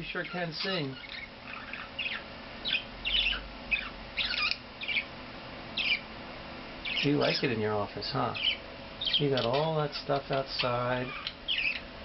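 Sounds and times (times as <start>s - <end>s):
budgerigar chirping and warbling: 0.2s - 5.1s, 5.8s - 6.1s, 6.8s - 7.5s, 8.3s - 11.9s.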